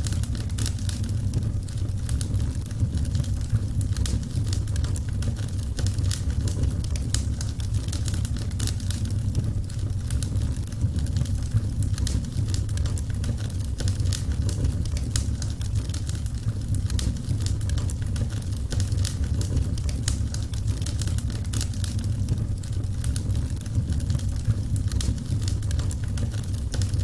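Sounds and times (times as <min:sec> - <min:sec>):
wood fire crackling: 0:00.0 - 0:27.0.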